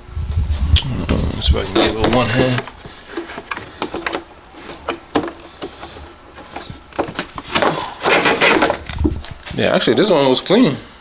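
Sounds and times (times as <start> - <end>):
filter scraping rustle: 0.2 - 9.9
plastic knocks and clicks: 1.8 - 9.4.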